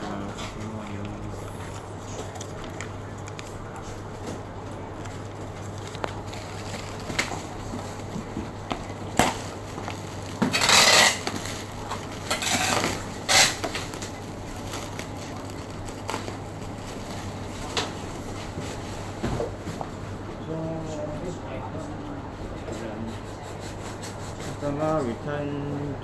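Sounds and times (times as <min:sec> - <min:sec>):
packaging rustling and scraping: 0:00.1 - 0:20.3.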